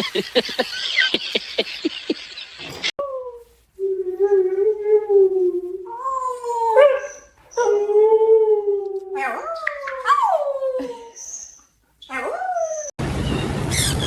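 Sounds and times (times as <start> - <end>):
dog-like howling: 3.4 - 13.0.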